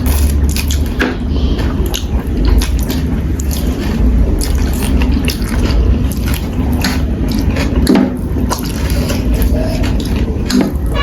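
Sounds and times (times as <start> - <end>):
noodles slurped and chewed: 0.0 - 11.0.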